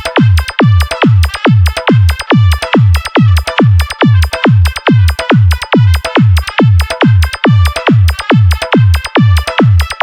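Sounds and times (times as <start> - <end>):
heavy kick drum with deep bass: 0.0 - 10.0.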